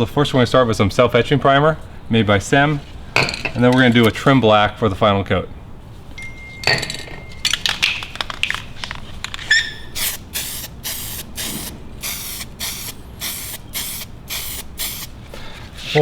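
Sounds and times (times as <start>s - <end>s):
spray can clicks and rattles: 7.5s - 15.1s
short light spray bursts: 9.9s - 15.2s.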